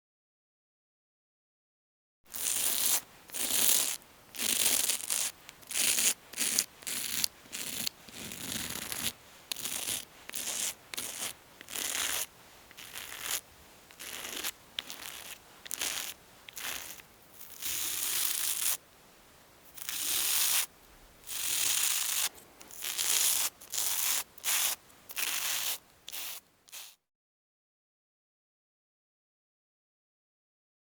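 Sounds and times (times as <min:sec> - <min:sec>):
razor scraping across stubble: 0:02.3 - 0:18.8, 0:19.7 - 0:27.0.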